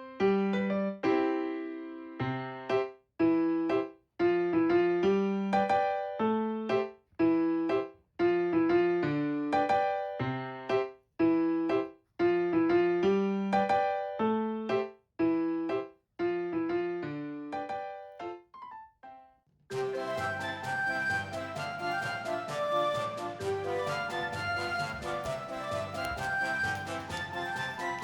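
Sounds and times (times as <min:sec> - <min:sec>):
electric piano tune: 0:12.7 - 0:28.0.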